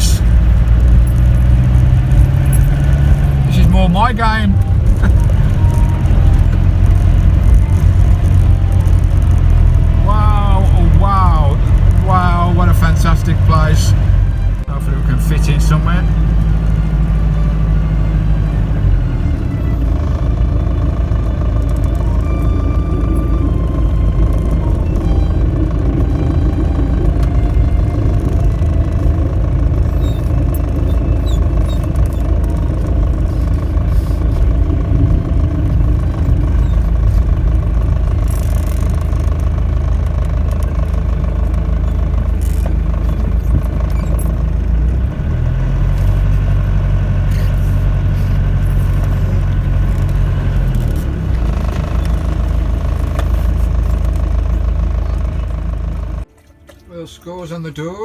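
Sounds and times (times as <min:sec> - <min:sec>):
light rattles and clatter: 0:00.0 - 0:03.5, 0:16.2 - 0:56.9
engine and road rumble: 0:00.0 - 0:58.0.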